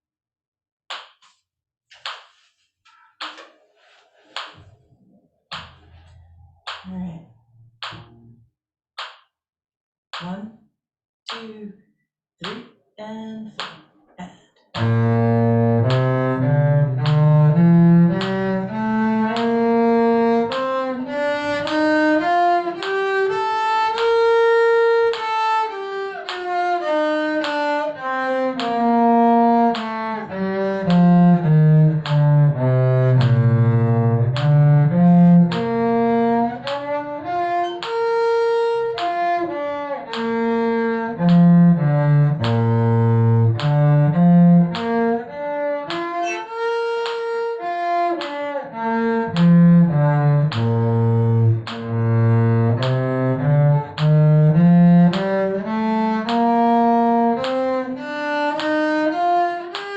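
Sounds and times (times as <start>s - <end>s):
cello playing a scale: 14.8s - 59.9s.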